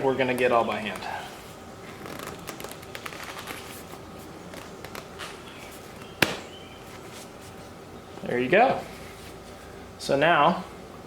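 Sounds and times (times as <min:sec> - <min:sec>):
tire bead snapping on: 0:06.1 - 0:06.6.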